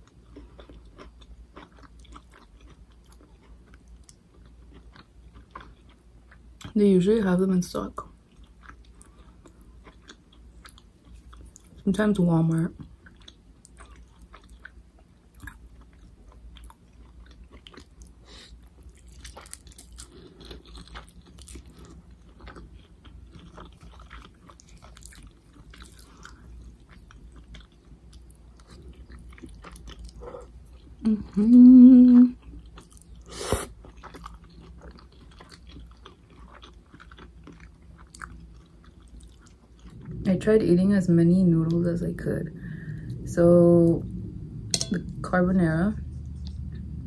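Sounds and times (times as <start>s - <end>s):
person humming: 31.0s - 32.4s.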